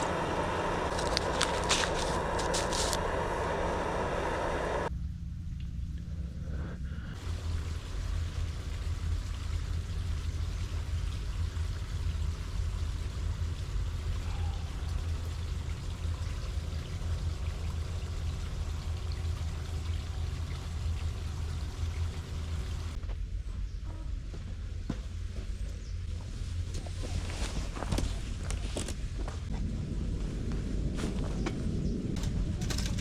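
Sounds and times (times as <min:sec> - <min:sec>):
low rumble: 0:00.0 - 0:33.0
water running: 0:07.2 - 0:23.0.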